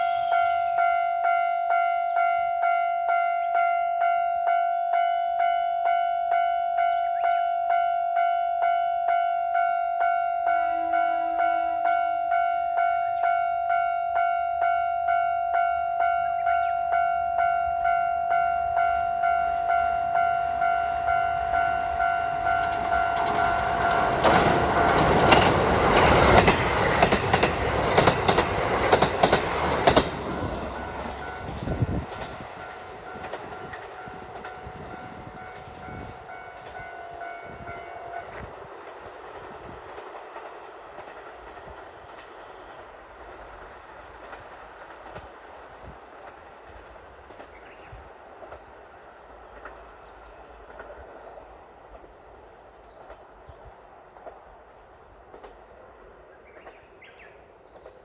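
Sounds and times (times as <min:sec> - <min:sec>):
train horn: 0:00.0 - 0:25.3, 0:30.7 - 0:38.6
train wheels clattering over rail joints: 0:21.8 - 0:34.7, 0:38.0 - 0:51.2.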